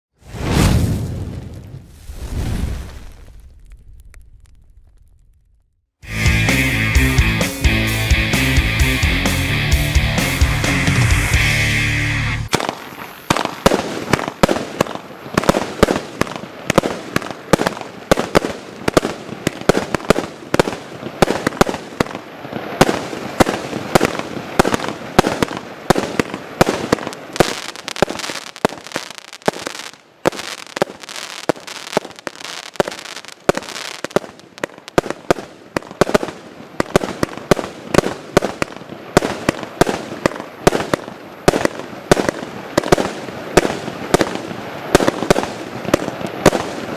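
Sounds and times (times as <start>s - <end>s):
firework barrage of bangs and crackling: 12.5s - 46.9s.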